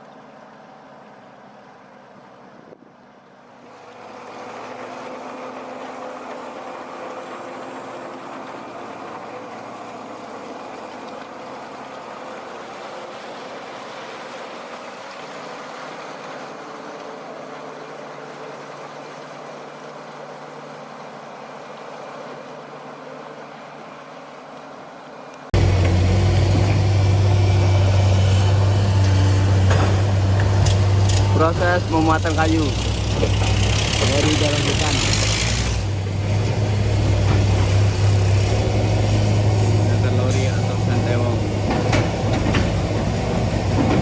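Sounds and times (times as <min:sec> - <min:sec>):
heavy vehicle engine rumbling: 0:25.5 - 0:44.0.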